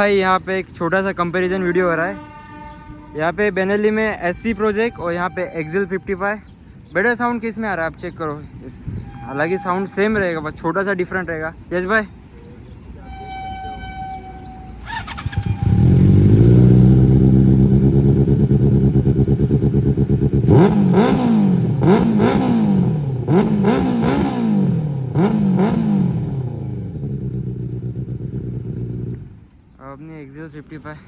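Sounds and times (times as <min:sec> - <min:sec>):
motorcycle engine starting and idling: 0:14.8 - 0:29.4
motorcycle throttle blips: 0:14.8 - 0:29.5.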